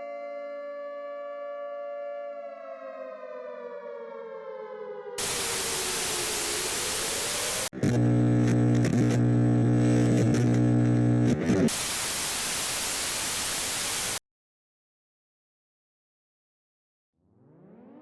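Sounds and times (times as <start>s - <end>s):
loud static hiss: 5.2s - 14.2s
two-note siren winding down: 17.2s - 18.0s.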